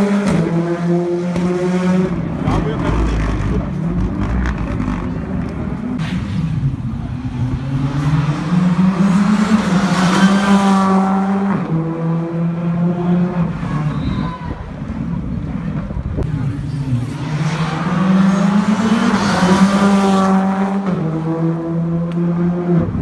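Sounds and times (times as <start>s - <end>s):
rally car accelerating past: 16.8s - 23.0s.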